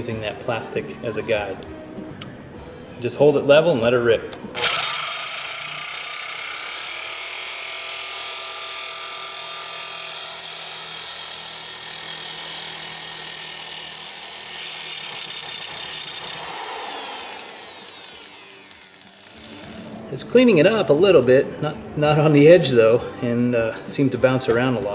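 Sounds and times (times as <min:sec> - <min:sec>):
impact wrench grinding whine: 0:04.5 - 0:20.1.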